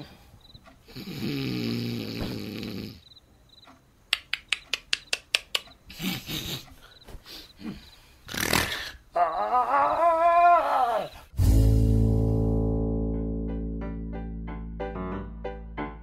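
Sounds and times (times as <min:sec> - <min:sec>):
loud rasping snore: 0:00.9 - 0:03.0.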